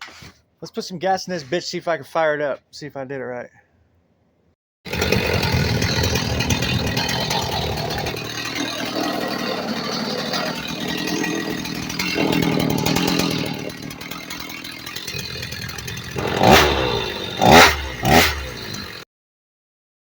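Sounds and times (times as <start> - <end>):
chainsaw idling and revving: 4.9 - 19.0.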